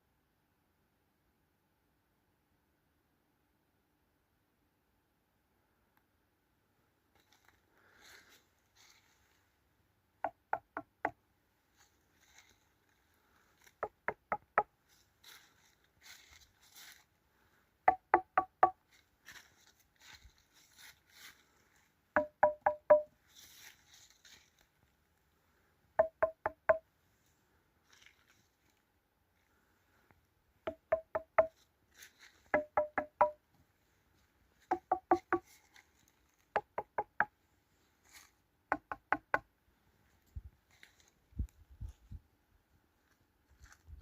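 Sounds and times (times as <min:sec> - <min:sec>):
faint rustling: 0:11.6 - 0:13.8
ringing wooden knocks: 0:17.9 - 0:18.8, 0:22.2 - 0:23.1, 0:26.0 - 0:26.8, 0:30.7 - 0:31.5, 0:32.6 - 0:33.4, 0:34.7 - 0:35.4.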